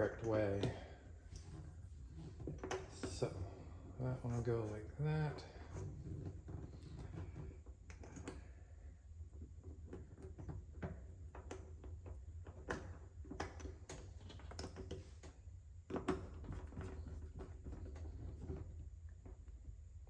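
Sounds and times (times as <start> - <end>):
steady low hum: 0.0 - 20.0
lock parts clicking and tapping: 9.8 - 15.3.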